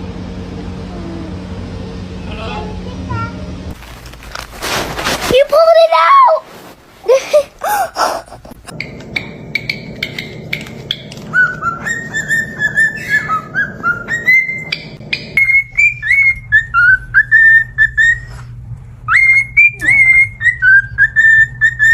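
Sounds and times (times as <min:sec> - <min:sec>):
parrot whistling a tune: 0:08.8 - 0:18.4, 0:19.1 - 0:21.9.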